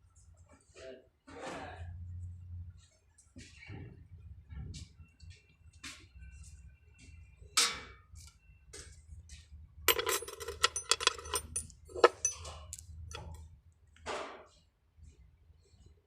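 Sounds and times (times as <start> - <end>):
metal tools clinking: 9.9 - 13.2.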